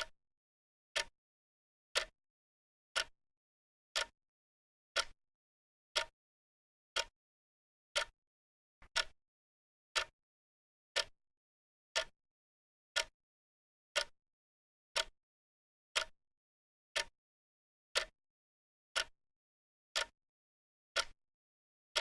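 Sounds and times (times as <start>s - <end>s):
clock ticking: 5.0s - 5.2s, 8.8s - 9.2s, 20.0s - 20.2s, 21.0s - 21.2s.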